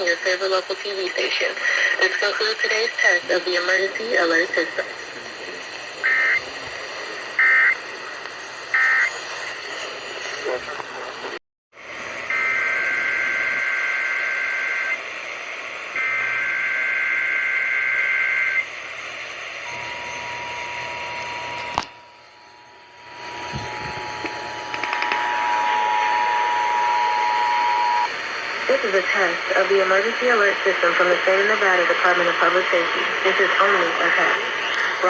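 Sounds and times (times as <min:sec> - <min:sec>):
radio click: 0:10.7 - 0:11.0, 0:23.2 - 0:25.5, 0:33.0 - 0:35.0
two-tone attention signal: 0:19.6 - 0:21.7, 0:22.4 - 0:28.1.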